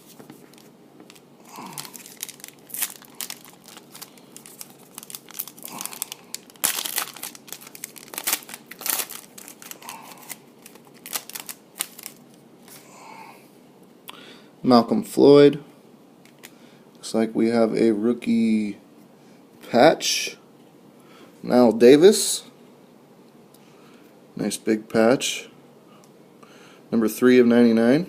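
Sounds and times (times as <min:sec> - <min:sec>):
plastic wrapper tearing and crinkling: 0:00.5 - 0:12.4.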